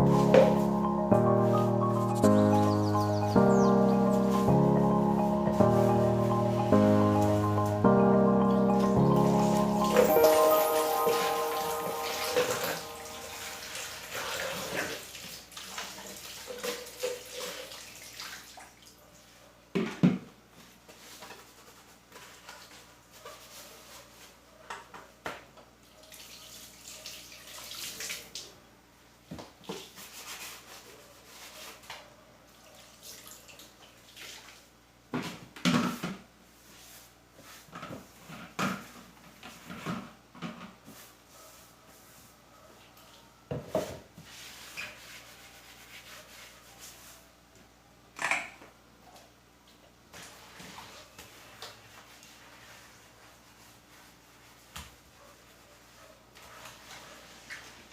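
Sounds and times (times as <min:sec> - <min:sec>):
water running from kitchen tap: 0:13.6 - 0:18.7.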